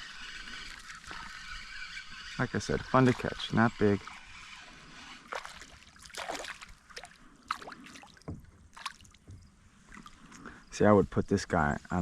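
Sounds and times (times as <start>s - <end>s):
small water splashes and drips: 5.3s - 10.5s.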